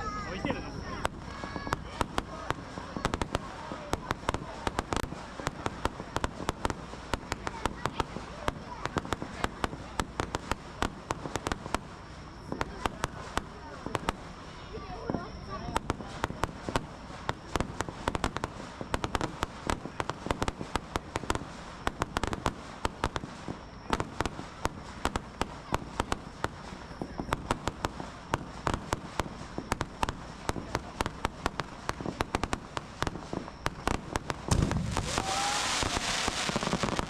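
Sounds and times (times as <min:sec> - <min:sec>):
fireworks crackling pops: 0:00.0 - 0:37.0
low firework boom: 0:28.4 - 0:37.0.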